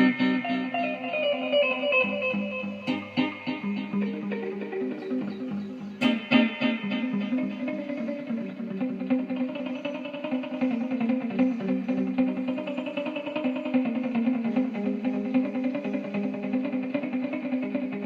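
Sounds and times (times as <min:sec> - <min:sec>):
electric guitar melody: 0:00.0 - 0:18.0.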